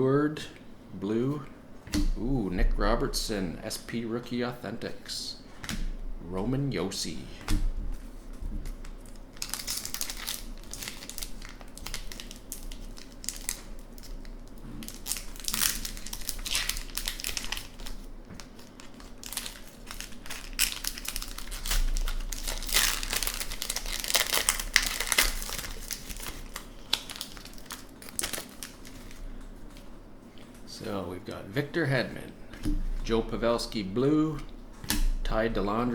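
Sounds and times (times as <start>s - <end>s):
foil wrapper crinkling and tearing: 8.6s - 29.9s.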